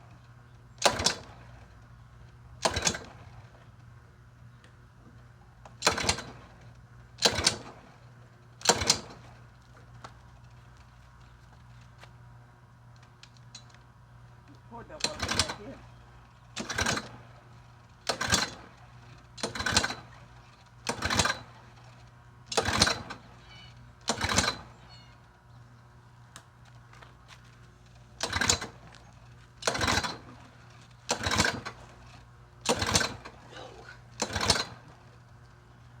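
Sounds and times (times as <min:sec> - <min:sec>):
starter cord pulls cranking engine: 0:00.8 - 0:01.8, 0:02.6 - 0:03.6, 0:05.8 - 0:08.0, 0:08.6 - 0:09.5, 0:14.5 - 0:25.3, 0:27.8 - 0:36.0.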